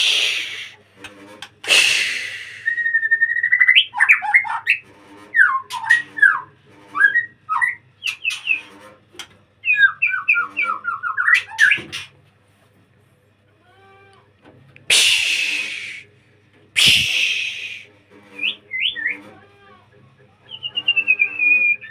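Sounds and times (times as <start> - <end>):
harsh rasping bird note: 0.0 - 3.0, 14.9 - 16.1, 16.8 - 19.4
songbird singing whistled phrases: 2.6 - 4.2, 20.5 - 21.9.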